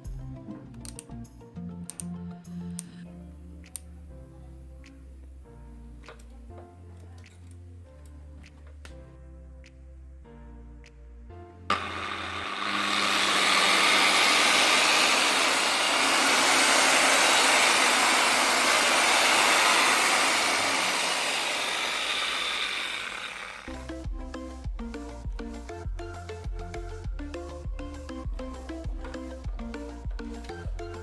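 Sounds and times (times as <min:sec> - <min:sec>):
polisher motor running: 0:11.7 - 0:24.3.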